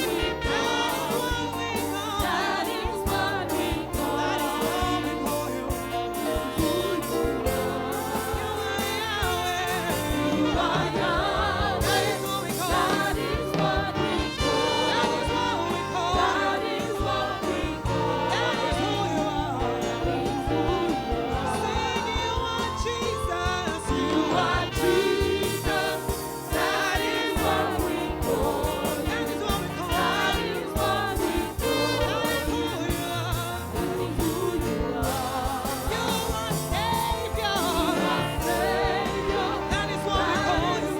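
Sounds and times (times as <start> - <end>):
band with drums and keyboard: 0.0 - 40.9
voices singing gospel music: 0.0 - 40.9.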